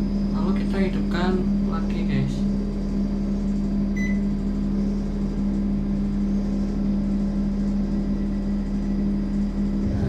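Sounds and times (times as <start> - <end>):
air conditioner beep: 0.0 - 10.0
machine hum: 0.0 - 10.0.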